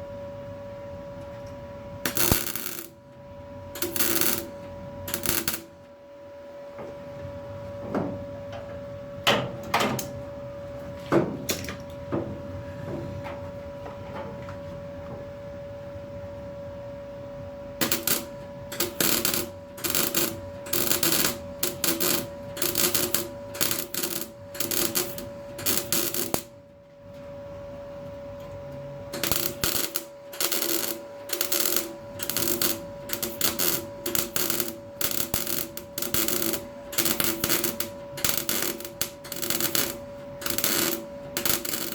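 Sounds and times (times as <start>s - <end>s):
steady hum: 0.0s - 41.9s
welder crackling: 2.0s - 3.0s, 3.8s - 5.8s, 17.8s - 26.5s, 29.2s - 41.9s.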